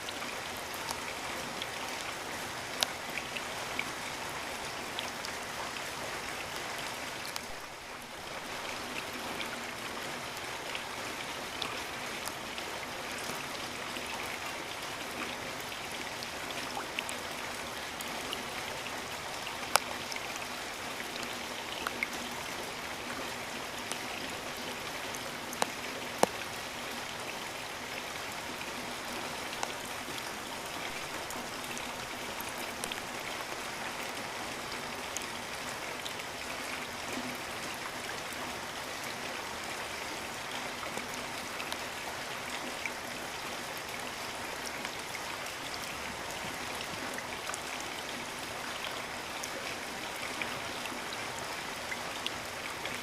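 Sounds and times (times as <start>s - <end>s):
steady rain: 0.0s - 53.0s
water drips: 7.2s - 7.8s, 13.2s - 34.3s.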